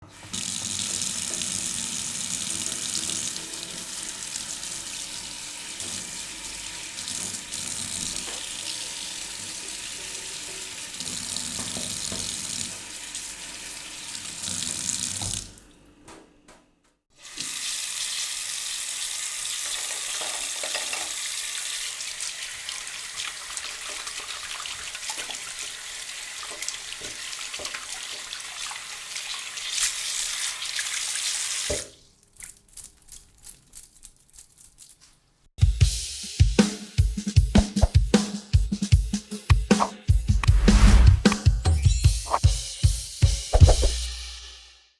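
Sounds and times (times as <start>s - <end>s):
tap water running into sink: 0.1s - 15.6s, 17.2s - 32.0s.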